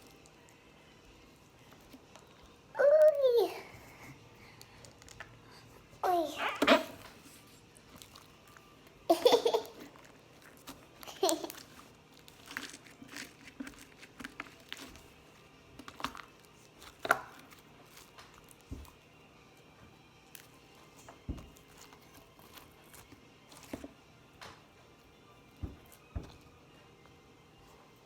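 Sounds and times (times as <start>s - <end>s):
girl giggling: 9.1s - 9.9s.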